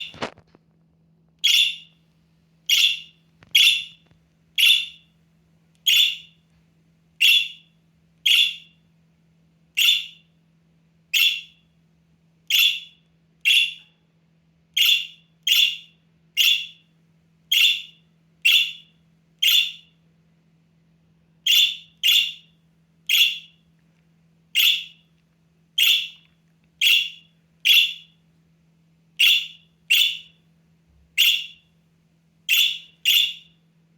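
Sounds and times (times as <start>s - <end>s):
budgerigar chick calling: 1.4s - 1.9s, 2.7s - 4.0s, 4.6s - 5.0s, 5.9s - 6.3s, 7.2s - 7.6s, 8.2s - 8.7s, 9.8s - 10.2s, 14.8s - 15.8s, 16.4s - 16.8s, 17.5s - 19.8s, 21.5s - 22.4s, 23.1s - 23.5s, 24.6s - 25.0s, 25.8s - 26.2s, 26.8s - 28.1s, 29.2s - 30.3s, 31.2s - 31.6s, 32.5s - 33.5s.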